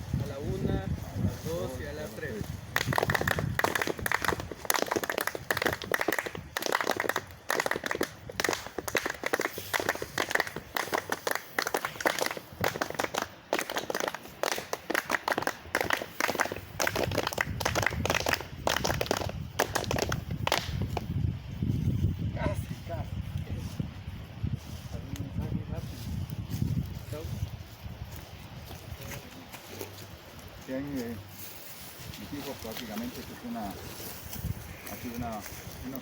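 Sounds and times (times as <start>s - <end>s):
group clapping fast: 2.6s - 21.1s.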